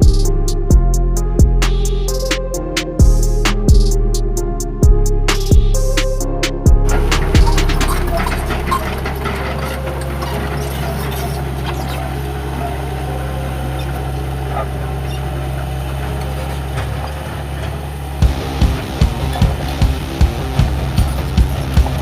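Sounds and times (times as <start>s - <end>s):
toy excavator humming: 6.9s - 22.0s.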